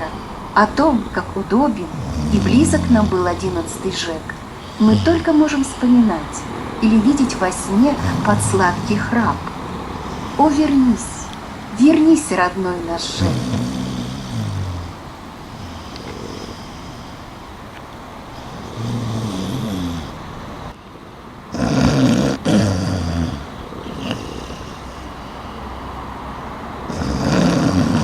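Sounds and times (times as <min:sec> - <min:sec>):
person snoring: 0:00.0 - 0:17.3, 0:18.4 - 0:20.2, 0:21.6 - 0:28.0
traffic hum: 0:00.0 - 0:28.0.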